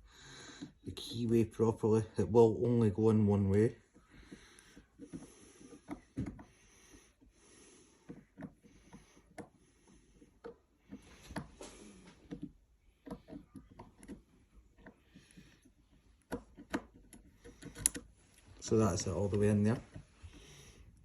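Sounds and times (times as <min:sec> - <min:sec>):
lock pick clicks and scrapes: 0:16.2 - 0:18.1.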